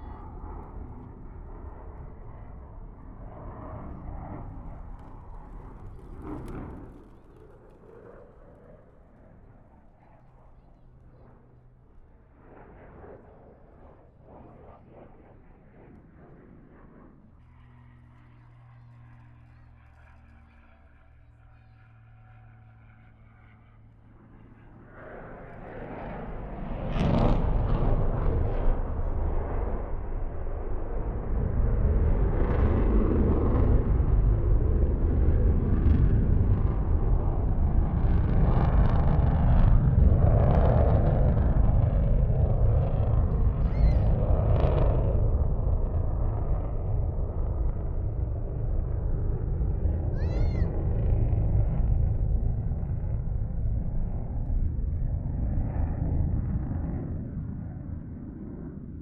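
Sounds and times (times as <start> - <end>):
distant jet aircraft roar: 0.0 - 59.0
jet engine crackling: 3.9 - 9.5.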